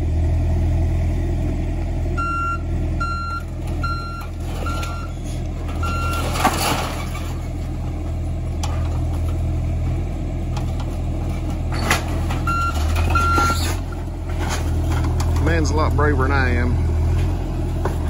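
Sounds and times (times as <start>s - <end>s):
diesel engine running: 0.0s - 18.0s
reversing alarm beeping: 2.2s - 5.2s, 5.8s - 6.4s, 12.4s - 13.8s.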